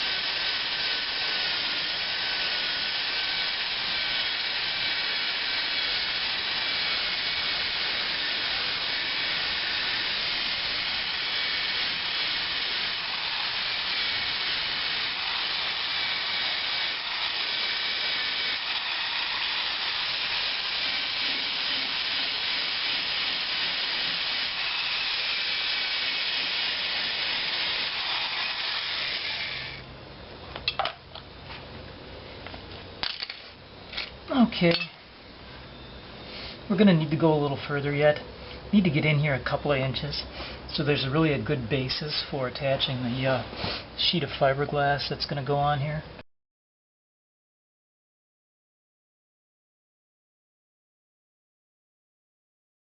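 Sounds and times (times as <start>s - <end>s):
sanding disc grinding metal: 0.0s - 29.8s.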